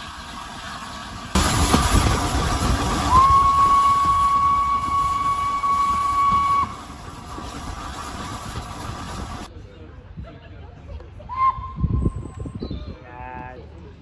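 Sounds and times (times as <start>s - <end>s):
hissing steam rush: 0.0s - 9.5s
steam locomotive whistle: 2.9s - 7.0s.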